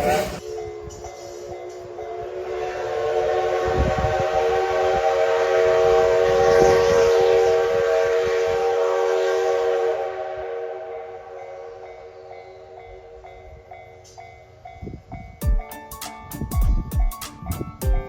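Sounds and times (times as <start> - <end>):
steam whistle blast: 0.0 - 13.2.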